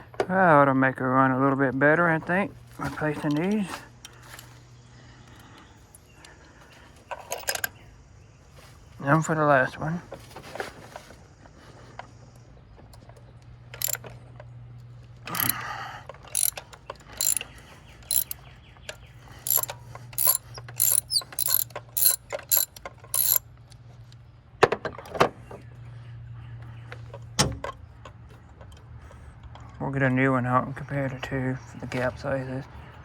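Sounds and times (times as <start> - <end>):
socket ratchet clicking: 13.8 - 14.0, 15.3 - 15.6, 16.3 - 17.4, 18.1 - 18.4, 19.4 - 23.4.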